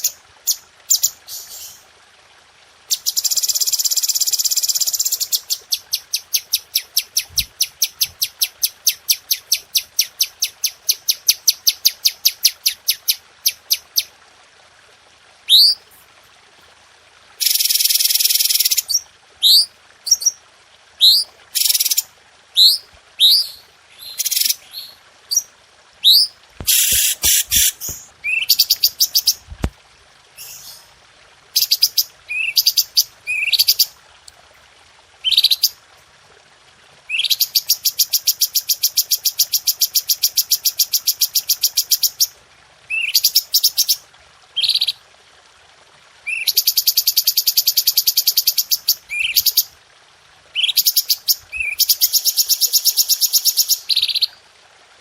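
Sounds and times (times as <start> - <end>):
bird chirping and trilling: 22.6 - 29.4, 31.6 - 33.9.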